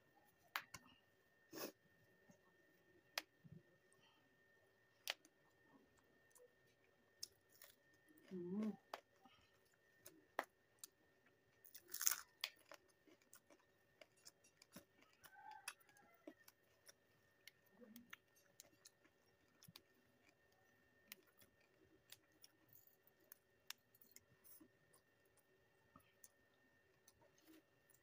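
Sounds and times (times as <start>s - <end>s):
soft chewing and mouth clicks: 4.8s - 28.0s
crisp crunch: 10.8s - 25.0s.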